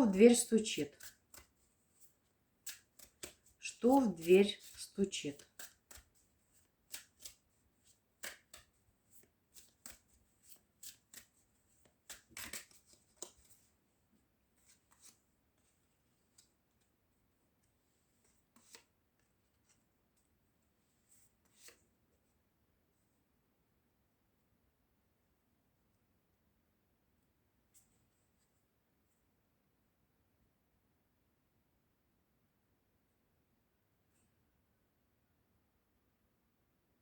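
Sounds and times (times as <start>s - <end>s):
cards being shuffled: 0.1s - 13.7s, 14.6s - 15.2s, 18.2s - 18.9s, 21.4s - 21.8s.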